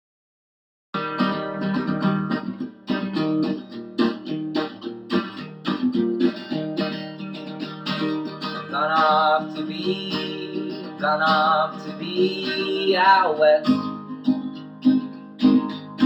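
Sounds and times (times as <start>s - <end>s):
acoustic guitar strumming: 1.0s - 16.0s.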